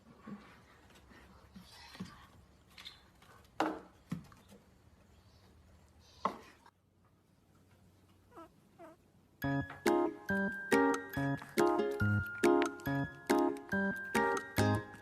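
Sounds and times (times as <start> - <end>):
faint room noise: 0.0 - 10.2.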